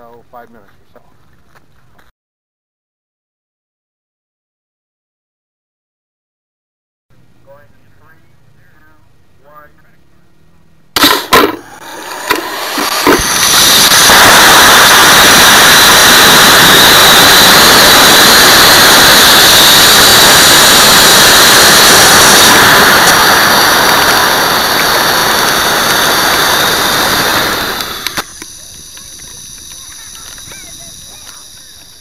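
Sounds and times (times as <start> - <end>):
rocket motor roaring: 11.0 - 32.0
sharp cracks: 11.0 - 32.0.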